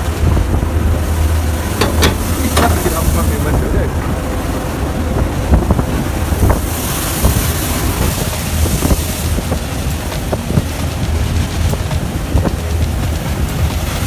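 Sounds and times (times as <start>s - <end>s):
rushing waves: 0.0s - 14.0s
storm wind buffeting microphone: 0.0s - 14.0s
short knocks: 1.7s - 3.0s.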